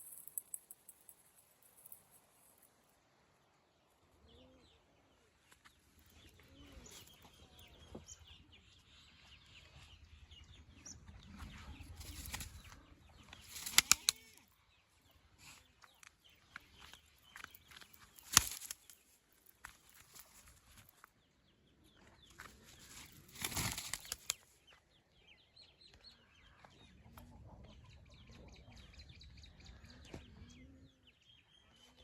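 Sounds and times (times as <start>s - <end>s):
pigeons flapping wings: 13.5s - 14.2s, 23.1s - 24.4s
sharp cracks: 13.5s - 14.4s.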